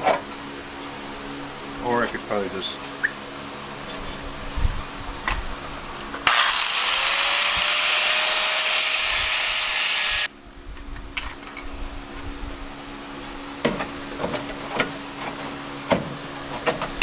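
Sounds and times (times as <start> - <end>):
power grinder cutting sheet metal: 6.2 - 10.3.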